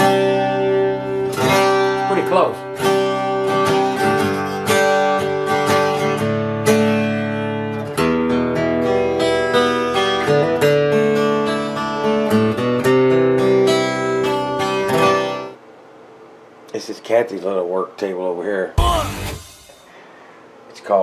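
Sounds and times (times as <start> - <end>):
electric guitar playing: 0.0 - 15.5, 18.8 - 19.9.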